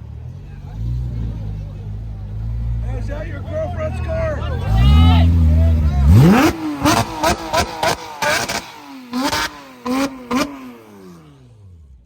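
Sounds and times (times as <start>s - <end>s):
car engine on the overrun: 0.0s - 12.0s
exhaust popping and crackling: 2.4s - 11.2s.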